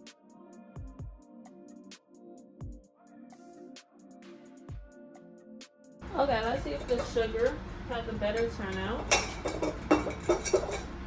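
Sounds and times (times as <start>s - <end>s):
electronic music with beat: 0.0s - 6.0s.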